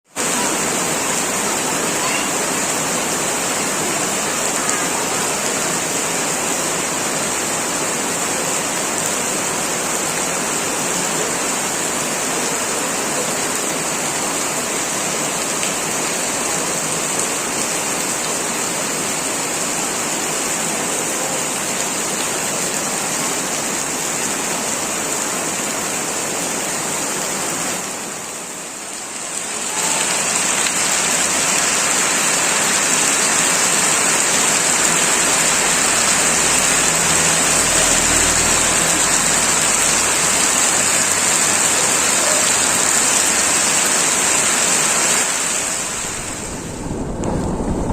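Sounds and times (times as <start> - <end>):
heavy rain pouring: 0.0 - 47.9.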